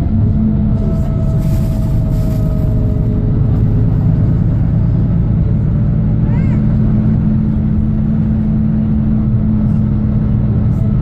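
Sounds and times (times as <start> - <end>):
faint whine: 0.0 - 5.2
bus diesel engine running: 0.0 - 11.0.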